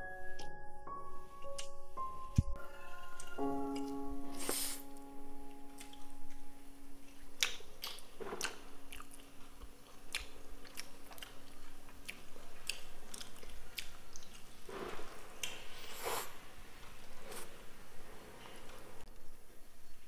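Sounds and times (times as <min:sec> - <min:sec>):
person biting and chewing food: 0:07.4 - 0:15.7.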